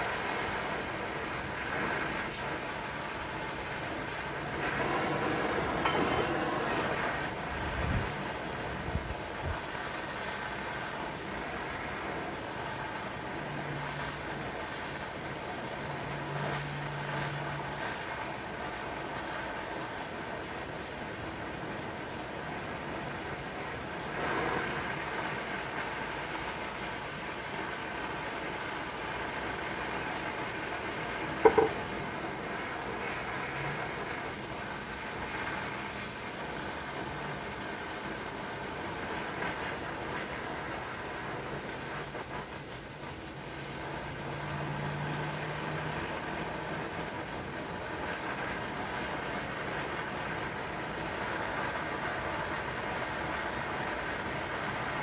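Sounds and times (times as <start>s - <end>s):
gas torch hissing: 0.8s - 18.9s
sharp knocks: 31.4s - 31.9s.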